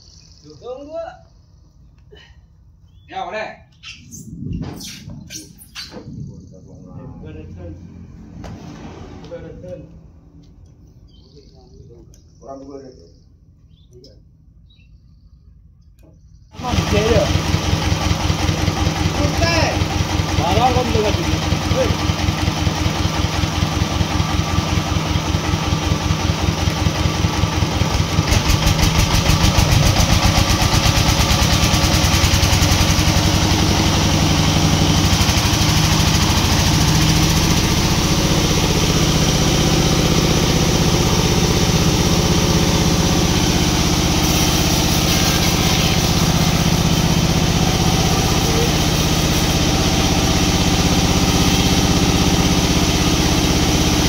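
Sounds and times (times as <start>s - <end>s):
engine chugging: 3.8s - 14.9s, 16.0s - 54.0s.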